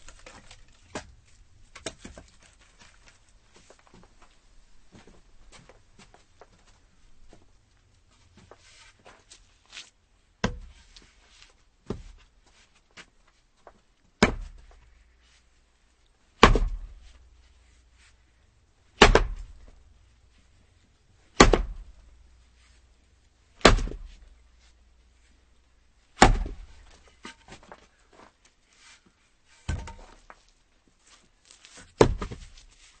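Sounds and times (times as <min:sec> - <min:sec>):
axe chopping firewood: 0:00.0 - 0:02.3, 0:10.4 - 0:10.8, 0:14.2 - 0:14.8, 0:16.4 - 0:17.1, 0:19.0 - 0:19.8, 0:21.3 - 0:22.0, 0:23.6 - 0:24.3, 0:26.2 - 0:27.8, 0:29.6 - 0:30.4, 0:31.6 - 0:32.6
small knocks: 0:29.6 - 0:30.4.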